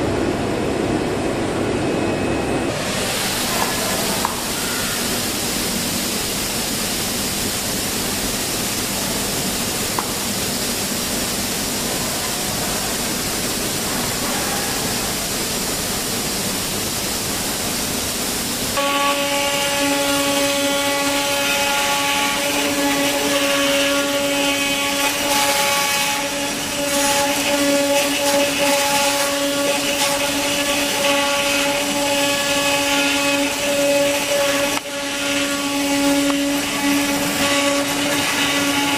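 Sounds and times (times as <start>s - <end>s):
machine whine: 0.0s - 6.2s, 18.7s - 38.9s
cutting machine hiss: 2.7s - 38.9s.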